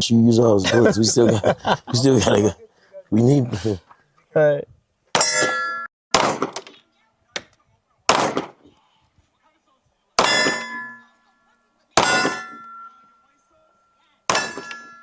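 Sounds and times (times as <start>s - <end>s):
steel targets ringing clang: 5.2s - 5.9s, 10.2s - 11.3s, 12.0s - 13.4s, 14.3s - 15.0s
handgun shots: 6.1s - 6.8s, 8.1s - 8.6s, 12.0s - 12.6s.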